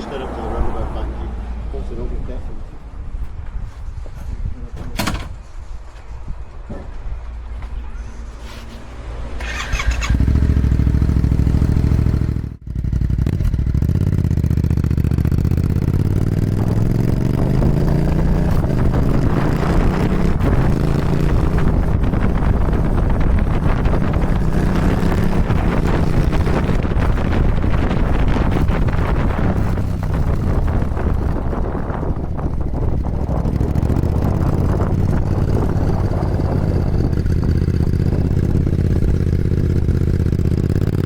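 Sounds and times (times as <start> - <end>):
wind noise: 1.9 - 12.5, 14.8 - 41.0
motorcycle engine: 9.1 - 41.0.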